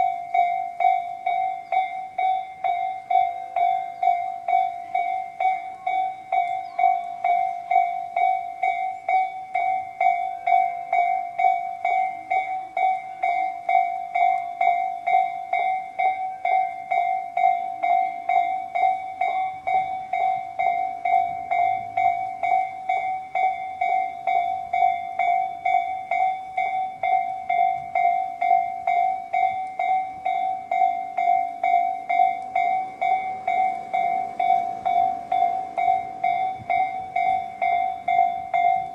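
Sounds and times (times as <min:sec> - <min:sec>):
level crossing alarm ringing: 0:00.0 - 0:38.9.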